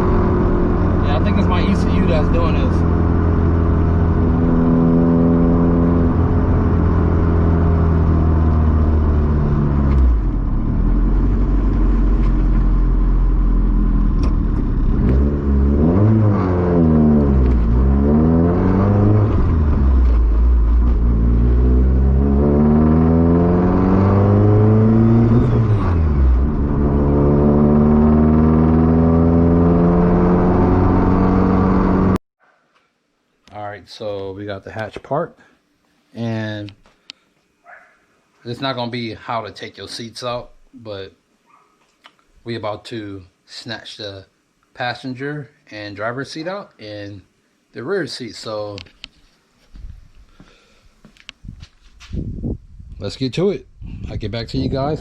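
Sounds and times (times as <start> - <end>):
car engine idling and revving: 0.0 - 32.2.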